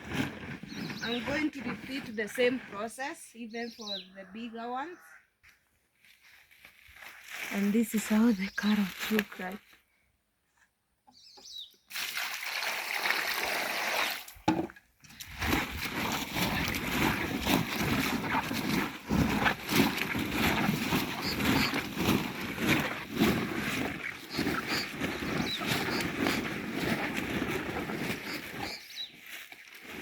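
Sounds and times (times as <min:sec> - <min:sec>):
water splashing and sloshing: 0:15.1 - 0:30.0.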